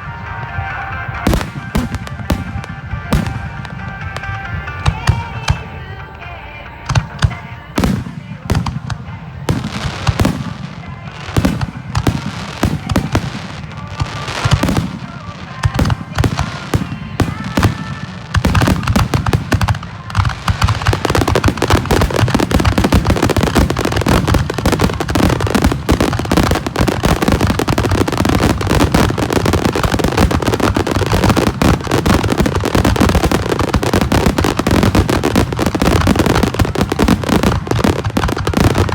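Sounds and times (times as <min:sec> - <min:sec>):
fireworks booming and crackling: 0:00.0 - 0:38.9.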